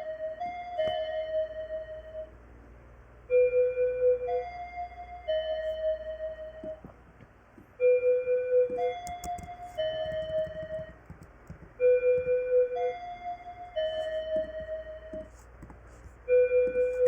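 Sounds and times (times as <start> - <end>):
electronic keyboard melody: 0.0 - 17.0.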